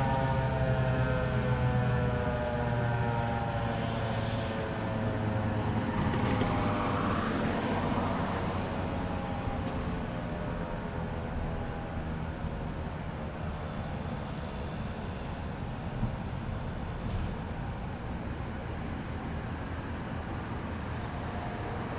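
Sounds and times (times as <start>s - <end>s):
vehicle passing: 0.0s - 10.9s
traffic noise: 0.0s - 21.9s
warning sirens winding down: 0.0s - 21.9s.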